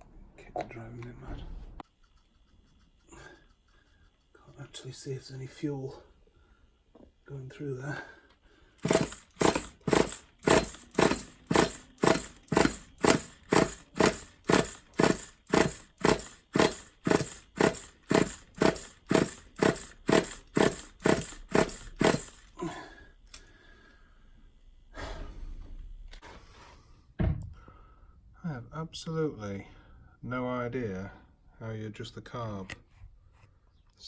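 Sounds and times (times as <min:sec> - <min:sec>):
recoil starter pulls: 0:08.8 - 0:22.6.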